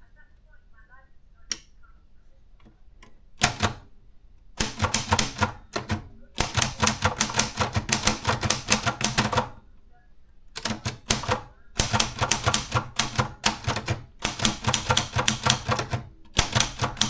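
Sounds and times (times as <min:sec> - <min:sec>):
typewriter key strikes: 0:03.4 - 0:03.9, 0:04.6 - 0:09.6, 0:10.6 - 0:17.0.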